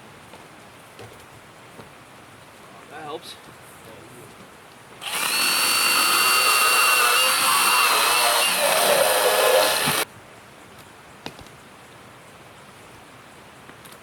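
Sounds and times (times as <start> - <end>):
chainsaw cutting firewood: 5.0 - 10.0.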